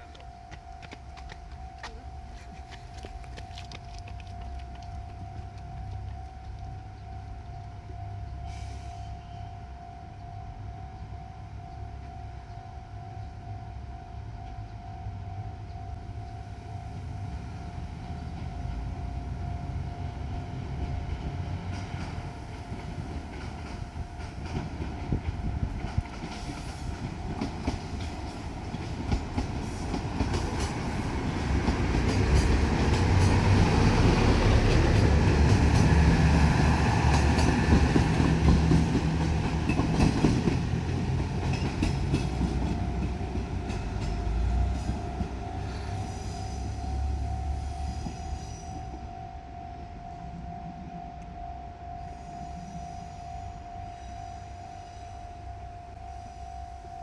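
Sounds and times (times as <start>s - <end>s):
train wheels clicking on rail joints: 0.0s - 7.6s, 16.4s - 49.2s
diesel train engine rumbling: 0.0s - 57.0s.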